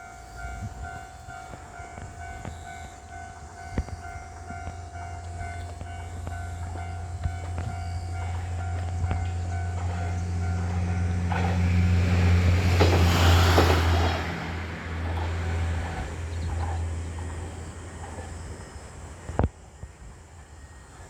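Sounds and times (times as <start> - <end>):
level crossing alarm ringing: 0.0 - 12.4
diesel railcar engine drone: 0.0 - 21.0
rail noise: 0.0 - 21.0.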